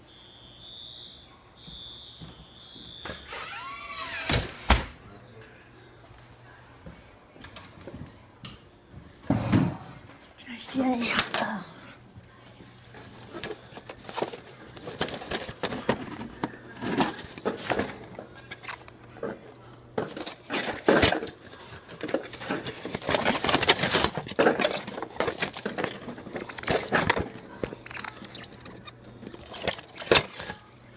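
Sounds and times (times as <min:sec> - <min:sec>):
rustling and crinkling: 0:10.9 - 0:30.9.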